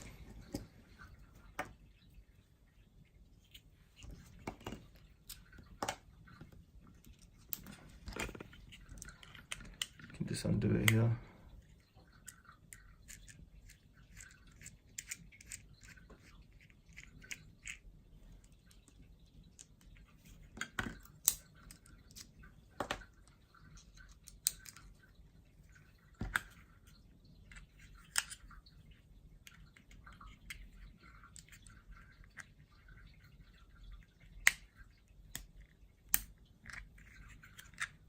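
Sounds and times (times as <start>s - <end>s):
plastic clicks and taps: 4.4s - 6.6s.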